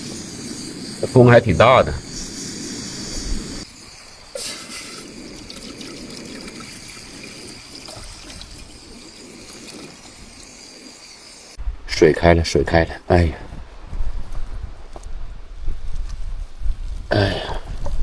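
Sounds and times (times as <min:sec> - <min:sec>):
water bubbling in a pot: 0:00.0 - 0:11.6.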